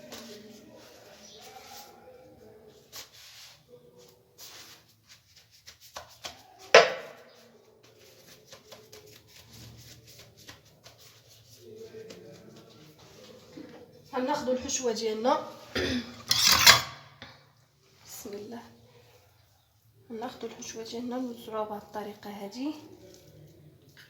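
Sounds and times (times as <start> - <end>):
pastry sheets rustling: 0.0 - 15.7, 17.8 - 24.0
sharp knock: 6.8 - 7.2.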